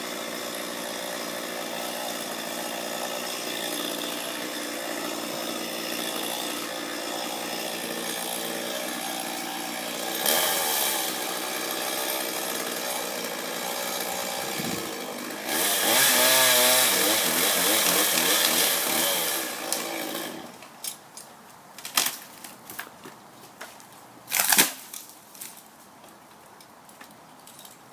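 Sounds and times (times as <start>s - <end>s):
chainsaw cutting wood: 0.0s - 20.7s.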